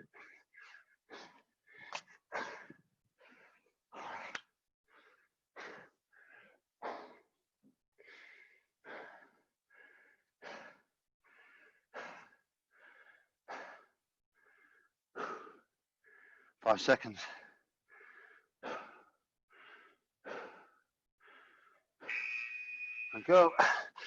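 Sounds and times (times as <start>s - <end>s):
person breathing hard: 0.1s - 7.4s, 8.0s - 16.6s, 17.2s - 22.0s
wheezy breath whistle: 21.7s - 24.0s.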